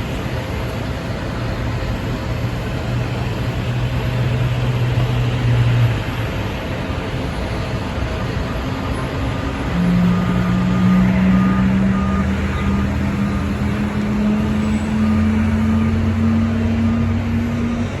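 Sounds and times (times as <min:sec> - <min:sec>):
backup alarm beeps: 0:09.6 - 0:17.1.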